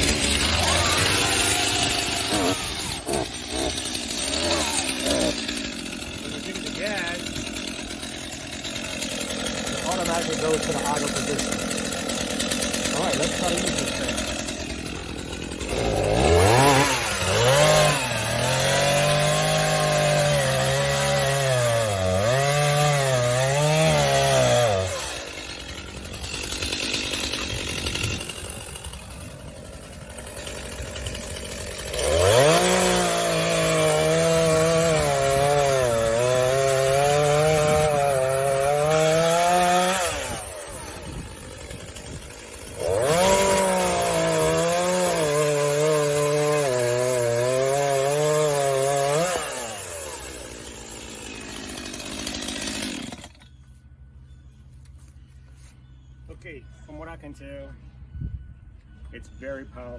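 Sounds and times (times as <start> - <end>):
chainsaw cutting wood: 0.0 - 53.7
chainsaw idling: 0.0 - 53.7.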